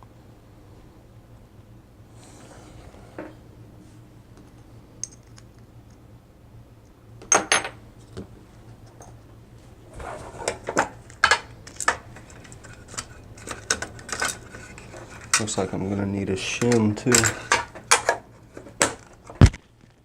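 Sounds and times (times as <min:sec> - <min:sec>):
lock parts clicking and clinking: 0:05.0 - 0:06.0, 0:10.6 - 0:15.7.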